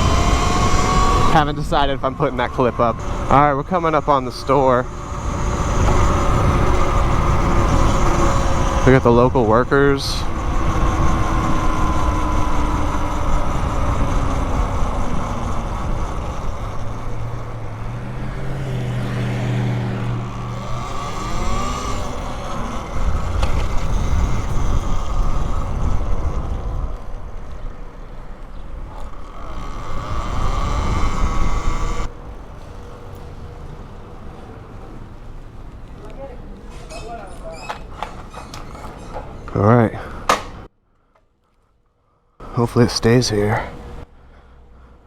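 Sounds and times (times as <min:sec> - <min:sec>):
electric dirt bike motor whine: 0:00.0 - 0:32.2
wind rushing over microphone: 0:00.0 - 0:32.2
motor vehicle engine: 0:00.0 - 0:40.7, 0:42.4 - 0:45.0.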